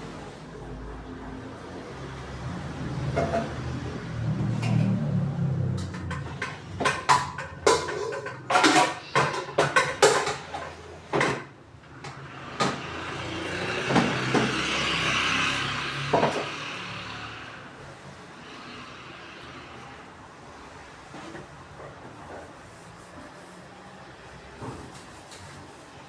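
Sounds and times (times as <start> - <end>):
dishes knocking and clinking: 3.0 - 3.7, 5.8 - 11.5.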